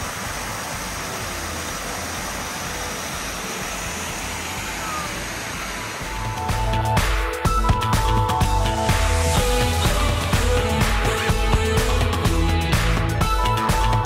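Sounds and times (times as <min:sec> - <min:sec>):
waterfall roaring: 0:00.0 - 0:08.0
music with low bass beat: 0:00.0 - 0:14.0.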